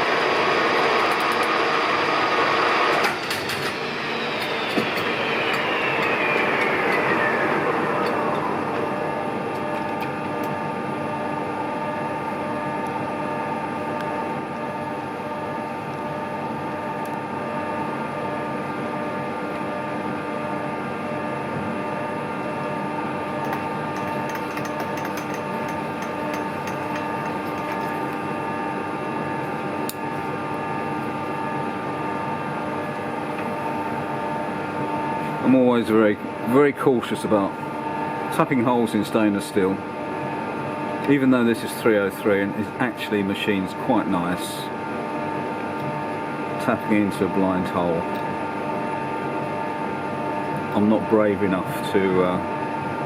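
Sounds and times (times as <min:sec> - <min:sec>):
metal lathe whining: 0:00.0 - 0:10.6, 0:23.1 - 0:28.6.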